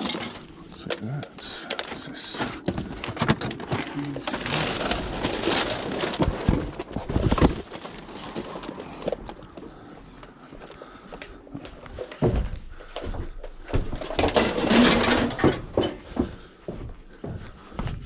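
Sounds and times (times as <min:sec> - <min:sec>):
junk clattering and rustling: 0:00.0 - 0:09.6, 0:11.9 - 0:16.4.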